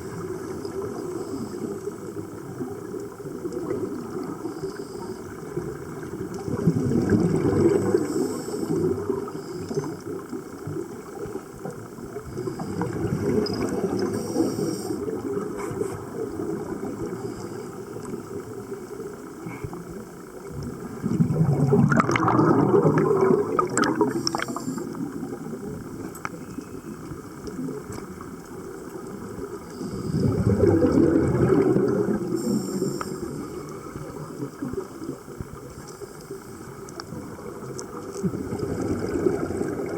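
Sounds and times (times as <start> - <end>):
underwater water noise: 0.0 - 39.9
scuba exhalation bubbles: 5.5 - 9.4, 12.3 - 17.2, 20.6 - 26.1, 29.2 - 35.6, 37.0 - 39.9.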